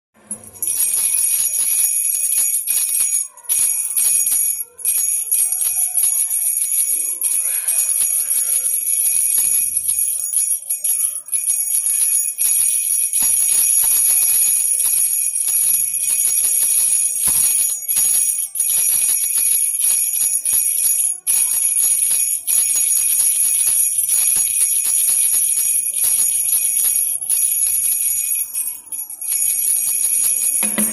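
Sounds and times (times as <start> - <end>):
baby rattle with bells jingling: 0.3 - 30.9.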